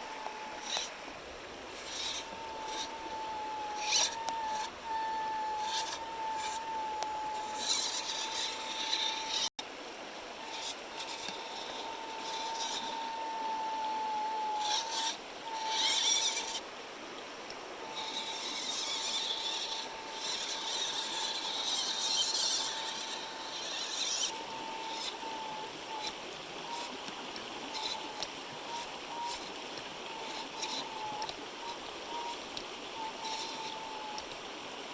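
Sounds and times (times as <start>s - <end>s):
toy car motor and gear whine: 0.0s - 1.1s, 1.7s - 9.6s, 10.2s - 16.7s, 17.8s - 34.5s
gritty scraping hiss: 0.0s - 34.9s.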